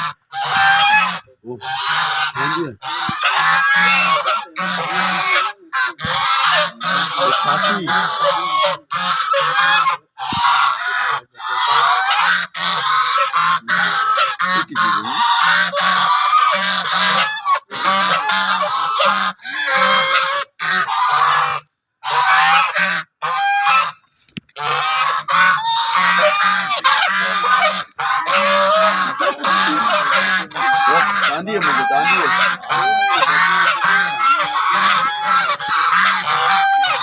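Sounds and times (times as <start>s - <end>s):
geese honking: 0.0s - 37.0s.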